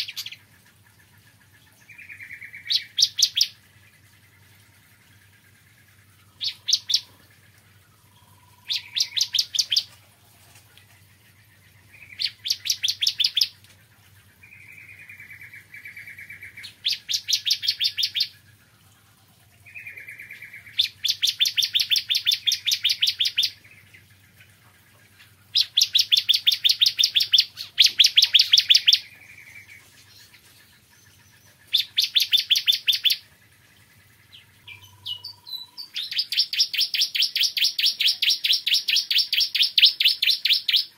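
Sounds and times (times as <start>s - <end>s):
bird high trills: 6.0s - 7.3s, 8.0s - 10.0s, 25.5s - 30.3s, 34.3s - 40.9s.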